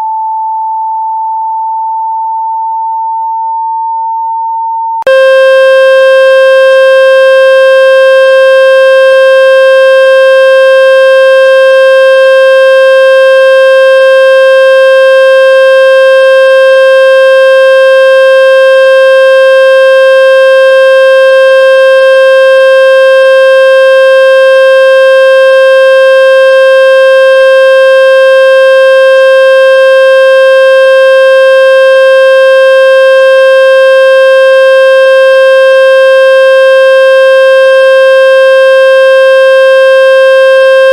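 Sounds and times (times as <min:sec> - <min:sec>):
buzzy electronic tone: 0:05.1 - 0:35.2, 0:40.5 - 0:40.9.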